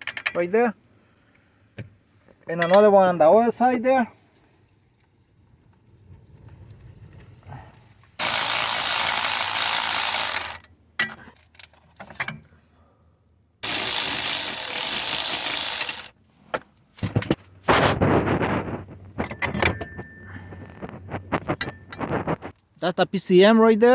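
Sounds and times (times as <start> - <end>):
power ratchet spinning nuts: 8.2 - 10.7, 13.6 - 16.1.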